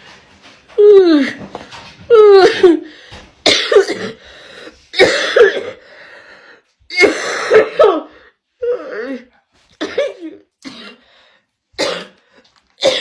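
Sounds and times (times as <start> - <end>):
woman coughing hard: 3.4 - 4.2, 4.9 - 5.8, 6.9 - 8.1, 9.8 - 11.0, 11.8 - 12.2, 12.8 - 13.0.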